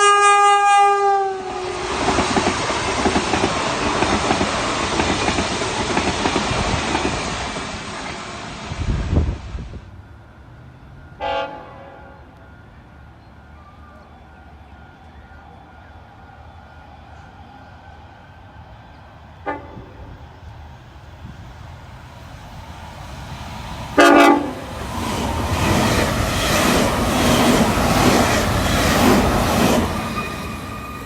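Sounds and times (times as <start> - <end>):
train horn: 0.0 - 1.8, 11.1 - 12.6, 19.4 - 20.2, 24.0 - 24.7
train wheels clicking over rail joints: 1.9 - 8.3.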